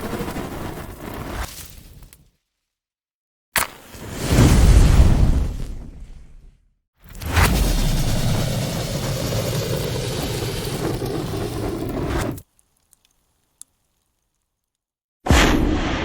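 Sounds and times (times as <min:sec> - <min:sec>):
fire burning with rumbling rush: 0:00.0 - 0:01.5, 0:03.9 - 0:06.4, 0:07.1 - 0:14.0
fire crackles: 0:00.0 - 0:02.1, 0:07.0 - 0:14.9.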